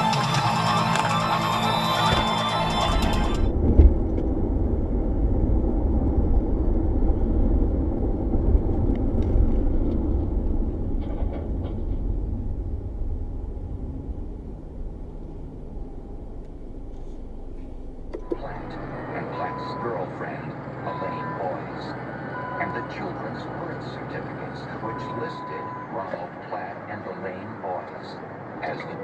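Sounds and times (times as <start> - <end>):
music: 0.0 - 3.5
vehicle interior road rumble: 0.0 - 29.0.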